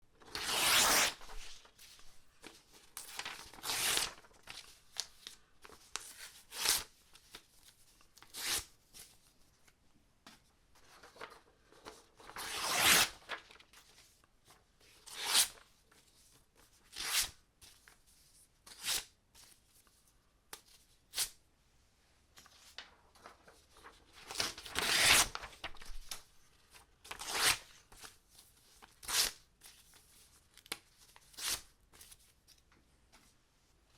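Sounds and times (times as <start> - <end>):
paper tearing: 0.3 - 1.4, 3.2 - 4.3, 12.3 - 13.4, 24.3 - 26.0.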